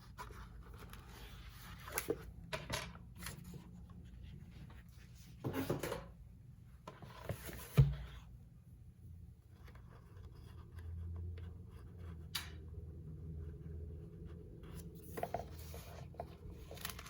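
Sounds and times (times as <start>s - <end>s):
paper rustling: 14.8s - 17.0s.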